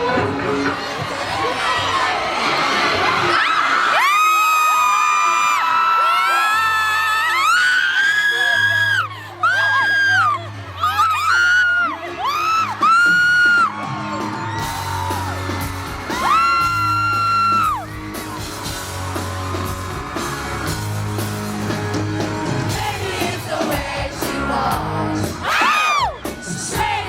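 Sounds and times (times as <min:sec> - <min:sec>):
fans screaming: 0:00.1 - 0:27.0
live pop band playing and singing: 0:10.9 - 0:27.0.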